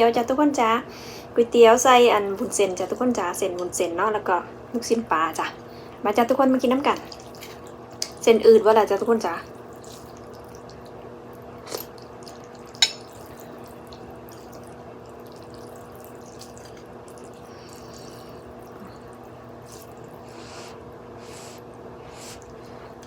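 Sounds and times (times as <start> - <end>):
low appliance hum: 0.0 - 23.0
sipping and slurping: 9.5 - 10.9, 11.6 - 23.0
utensil clinking against bowl: 12.7 - 13.3.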